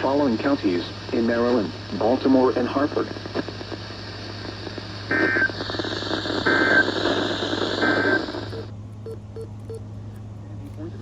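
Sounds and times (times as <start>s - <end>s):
radio hiss: 0.0s - 8.7s
digital data tone chirps: 8.1s - 9.8s.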